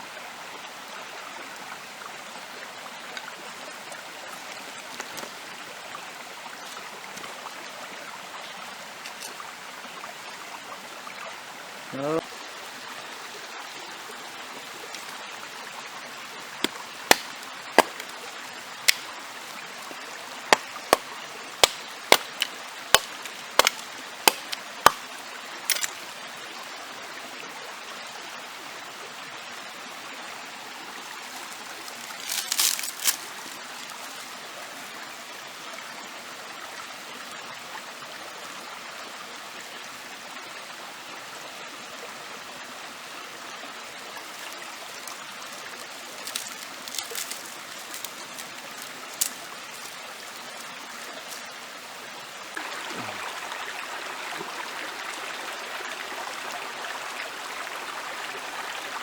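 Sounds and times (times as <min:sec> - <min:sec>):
stream running: 0:00.0 - 0:59.0.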